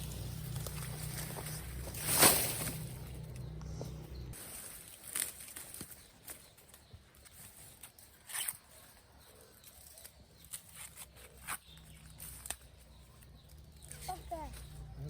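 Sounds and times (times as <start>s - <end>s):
rustles and scrapes: 0.0s - 14.8s.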